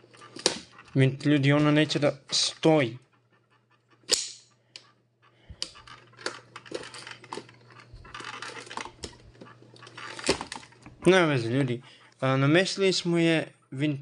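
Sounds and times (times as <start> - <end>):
plastic clatter: 5.6 - 11.0.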